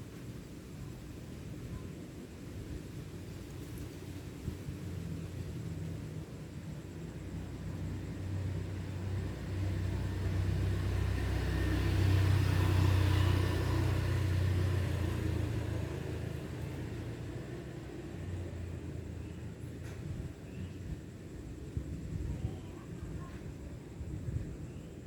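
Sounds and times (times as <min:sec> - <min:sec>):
vehicle passing by: 0:07.7 - 0:19.5.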